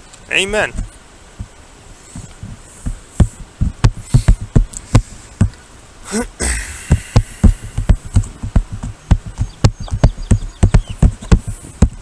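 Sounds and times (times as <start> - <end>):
short vocal sound: 6.0 - 7.9.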